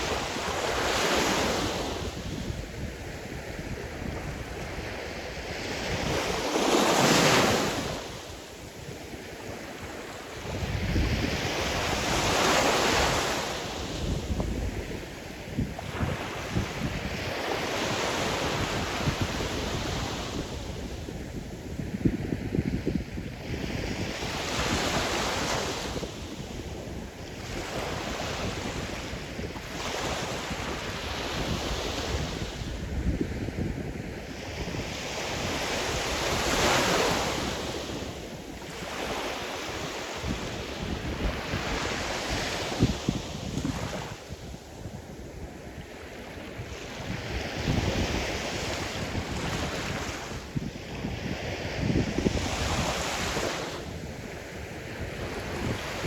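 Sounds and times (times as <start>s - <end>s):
waves breaking on shore: 0.0s - 21.4s, 34.2s - 56.0s
wind buffeting microphone: 0.0s - 56.0s.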